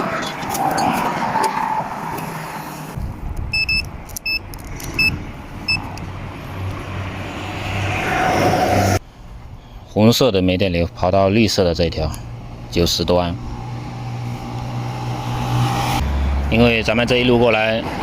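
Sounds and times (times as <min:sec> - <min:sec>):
vehicle passing close: 0:00.0 - 0:09.5, 0:12.2 - 0:18.0
road traffic rushing: 0:00.0 - 0:10.0, 0:10.6 - 0:18.0
high electronic beeps: 0:03.5 - 0:05.9.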